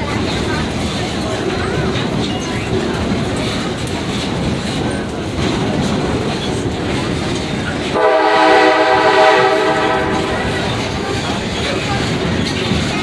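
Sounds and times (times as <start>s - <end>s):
train rumbling with wheel clatter: 0.0s - 13.0s
train horn: 8.0s - 11.2s.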